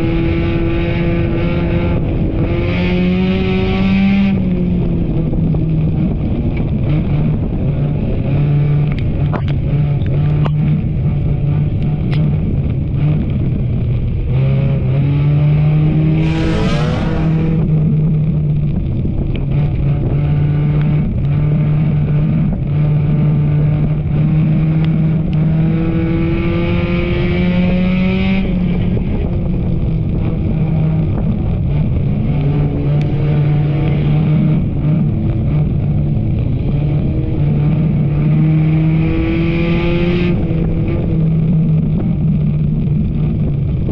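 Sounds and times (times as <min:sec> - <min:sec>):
race car engine revving: 0:14.3 - 0:29.0
brief whine: 0:16.1 - 0:18.1.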